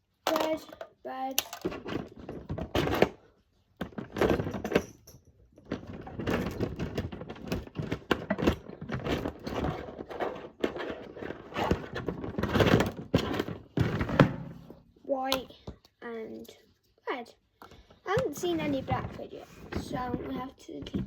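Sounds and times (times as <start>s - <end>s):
small toys clattering together: 0.2s - 3.2s, 3.8s - 14.2s.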